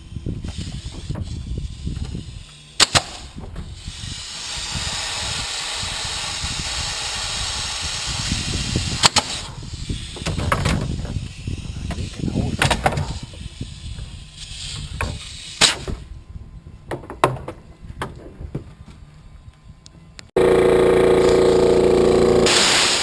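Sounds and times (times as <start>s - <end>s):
compressed air hissing: 0.0s - 16.0s, 22.4s - 23.0s
pneumatic tool snaps: 2.8s - 9.6s, 14.4s - 15.9s, 22.4s - 23.0s.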